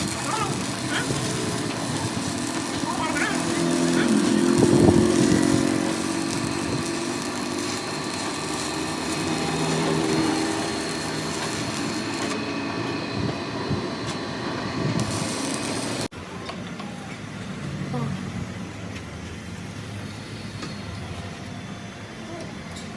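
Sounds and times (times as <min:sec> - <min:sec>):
power tool droning: 0:00.0 - 0:16.1.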